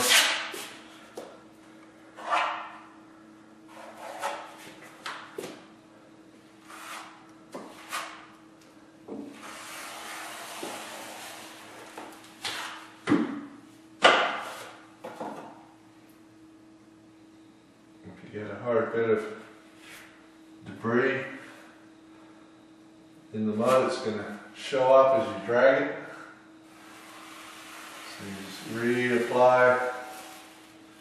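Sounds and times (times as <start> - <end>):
taping knife scraping compound: 0.0 - 0.7, 9.4 - 11.7, 26.7 - 30.6.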